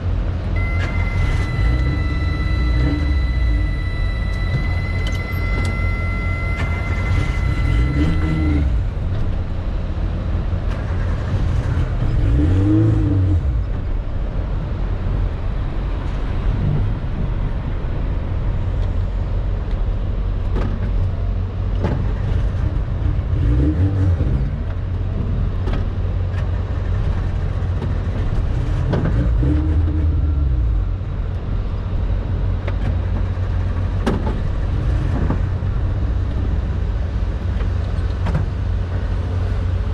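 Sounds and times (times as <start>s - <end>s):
car engine accelerating: 0.0s - 14.3s, 21.7s - 31.1s.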